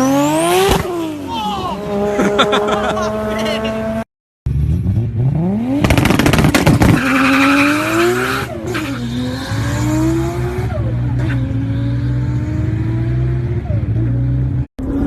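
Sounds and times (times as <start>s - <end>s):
exhaust pops crackling: 5.8s - 7.0s.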